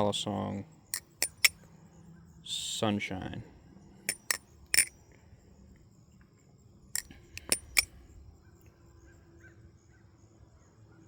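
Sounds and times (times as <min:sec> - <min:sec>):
sharp metallic clicks: 0:01.0 - 0:01.5, 0:04.1 - 0:04.9, 0:07.0 - 0:07.9.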